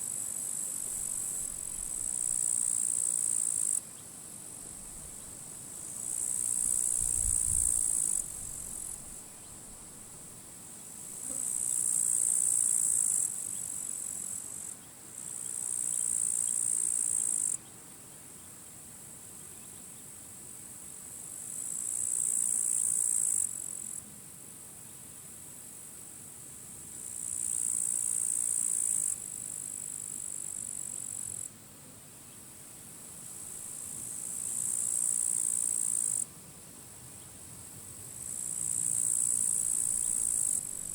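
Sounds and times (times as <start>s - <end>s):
wind hiss: 4.4s - 11.1s
wind rumble on microphone: 6.9s - 9.2s.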